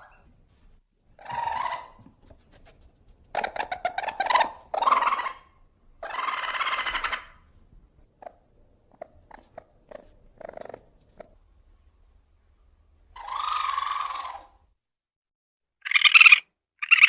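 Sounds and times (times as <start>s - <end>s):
ferret whining and squealing: 0.0s - 0.3s, 1.2s - 2.0s, 3.3s - 7.4s, 13.2s - 14.6s, 15.8s - 17.0s.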